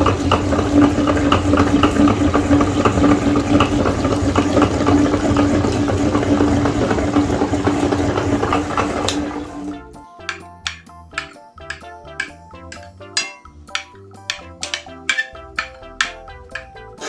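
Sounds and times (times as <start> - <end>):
meat grinder motor hum: 0.0 - 9.7.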